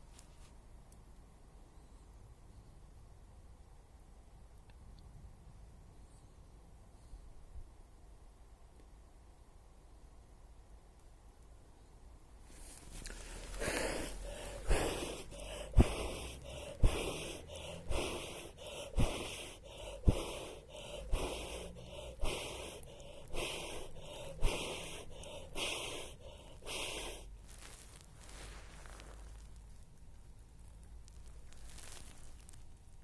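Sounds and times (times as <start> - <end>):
person blowing onto fire: 12.5 - 29.4.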